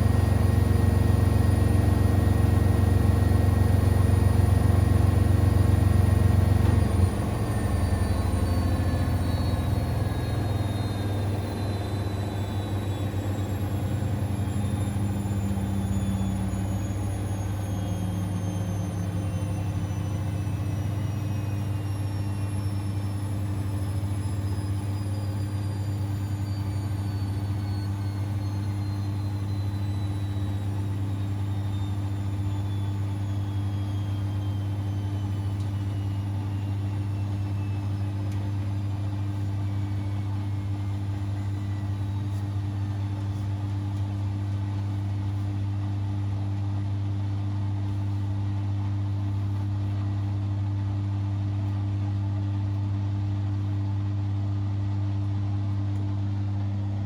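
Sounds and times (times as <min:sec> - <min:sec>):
faint high whine: 0:00.0 - 0:45.6
washing machine humming: 0:00.0 - 0:57.0.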